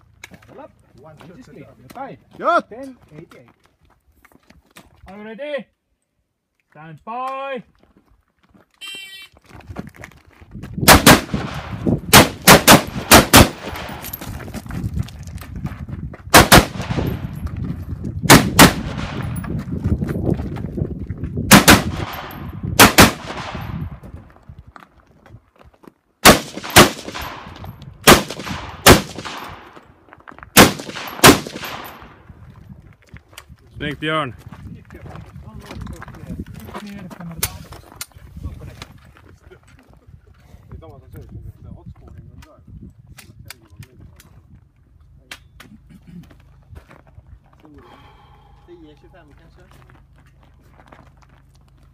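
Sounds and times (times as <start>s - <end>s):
rifle shots: 10.8s - 14.2s, 16.3s - 17.4s, 18.3s - 19.4s, 21.5s - 23.9s, 26.2s - 29.8s, 30.6s - 32.2s.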